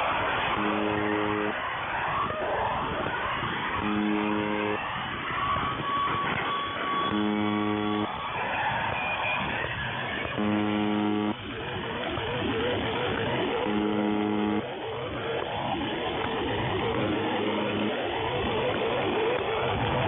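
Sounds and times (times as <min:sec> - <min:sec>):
harsh electronic noise music: 0:00.2 - 0:02.0, 0:03.2 - 0:05.0, 0:07.1 - 0:08.2, 0:10.4 - 0:20.0
short low buzz tone: 0:00.6 - 0:01.6, 0:03.8 - 0:04.8, 0:07.1 - 0:08.1, 0:10.4 - 0:11.4, 0:13.6 - 0:14.7.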